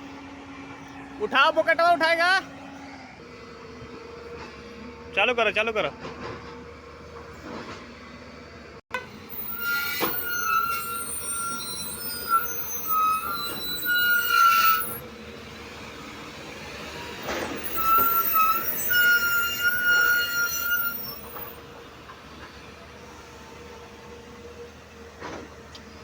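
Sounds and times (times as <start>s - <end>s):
excavator metal squealing: 9.0s - 15.1s, 17.0s - 21.6s.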